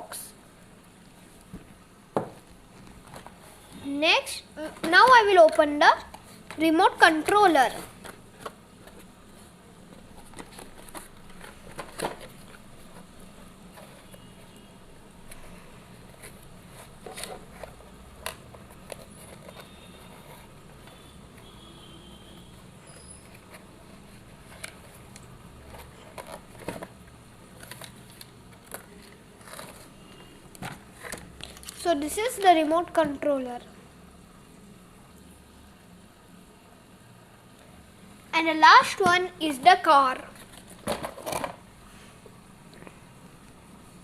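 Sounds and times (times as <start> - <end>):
packaging clicks and rustles: 9.8 - 21.6, 22.8 - 31.9.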